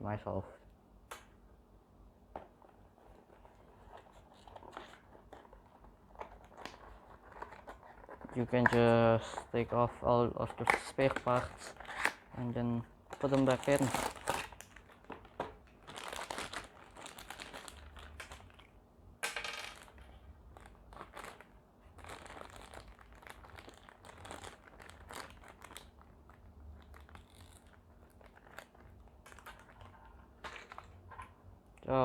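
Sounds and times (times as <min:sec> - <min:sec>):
plastic bags crinkling: 0:10.4 - 0:18.7, 0:19.6 - 0:31.0.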